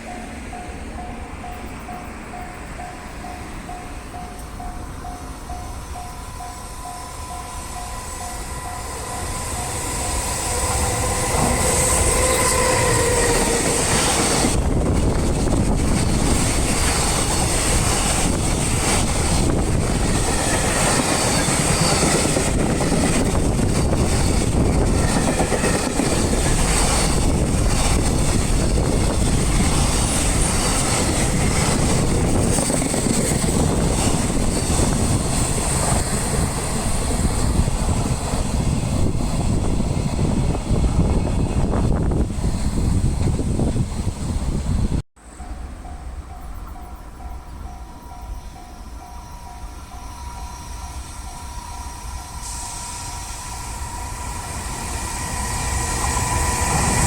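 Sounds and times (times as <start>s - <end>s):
level crossing warning bell: 0.0s - 12.2s, 45.4s - 55.7s
freight train passing: 0.0s - 57.0s.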